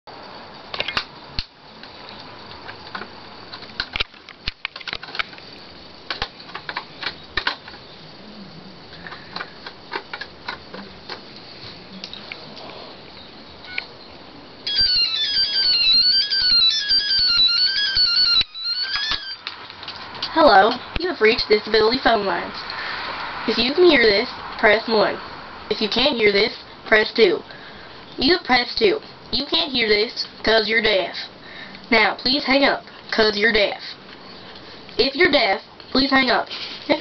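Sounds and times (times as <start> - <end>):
phone ringtone melody: 14.7 - 19.4.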